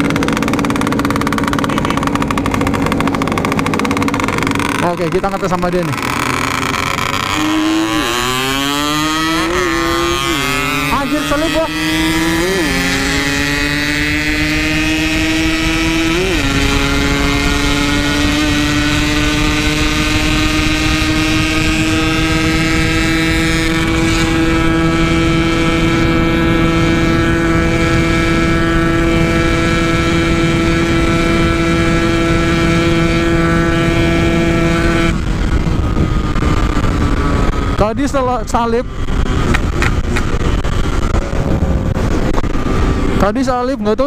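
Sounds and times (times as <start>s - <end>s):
two-stroke motorcycle at full throttle: 0.0s - 44.0s.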